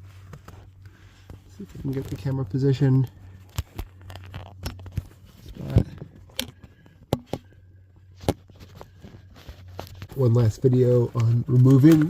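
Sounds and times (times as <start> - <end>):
camera handling clicks and knocks: 3.5 - 7.6.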